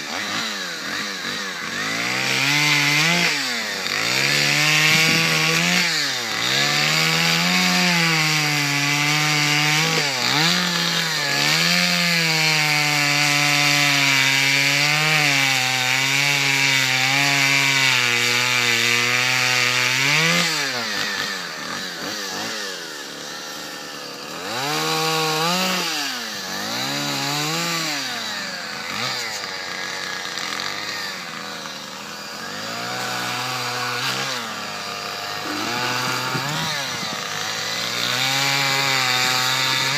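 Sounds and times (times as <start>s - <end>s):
chainsaw cutting wood: 0.0s - 39.9s
chainsaw revving: 0.0s - 39.9s.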